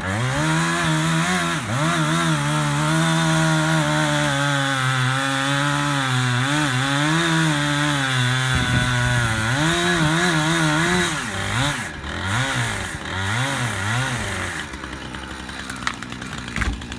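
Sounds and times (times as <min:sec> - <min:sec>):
chainsaw cutting wood: 0:00.0 - 0:16.9.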